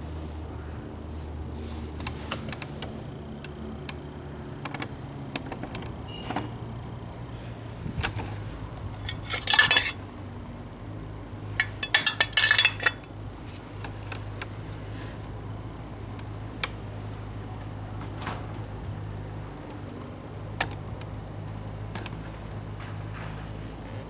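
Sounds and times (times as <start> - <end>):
steady low hum: 7.0 - 17.9
metal parts clinking and rattling: 8.0 - 10.0, 11.5 - 13.6.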